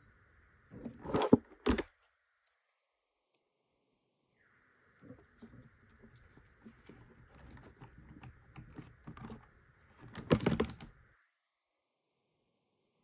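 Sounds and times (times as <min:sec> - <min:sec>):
plastic keyboard clicks and knocks: 0:06.7 - 0:11.0.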